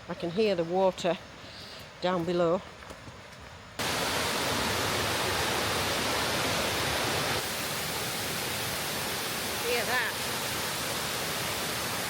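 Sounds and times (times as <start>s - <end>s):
waterfall rushing: 3.8s - 12.0s.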